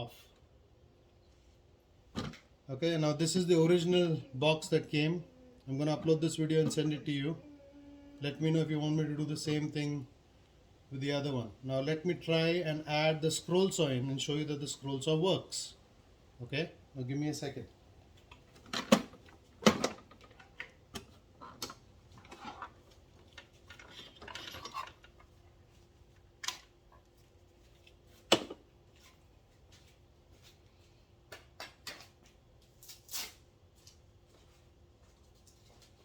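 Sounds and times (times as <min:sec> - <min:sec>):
power tool parts clattering: 0:18.6 - 0:25.4.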